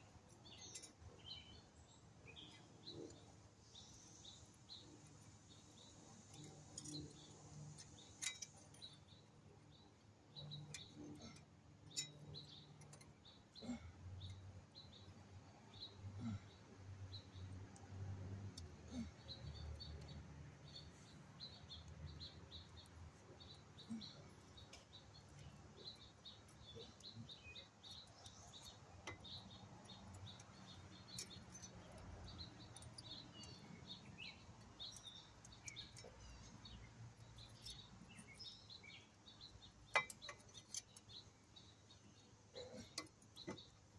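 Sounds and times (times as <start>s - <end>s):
faint bird chirping: 0.0s - 43.9s.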